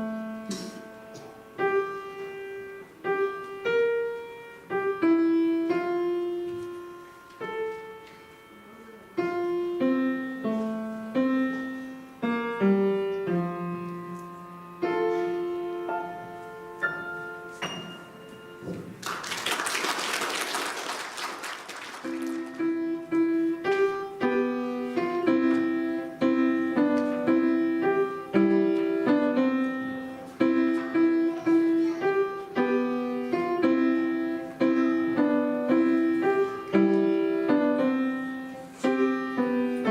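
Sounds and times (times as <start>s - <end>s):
piano piece: 0.0s - 39.9s
audience applause: 19.0s - 22.6s.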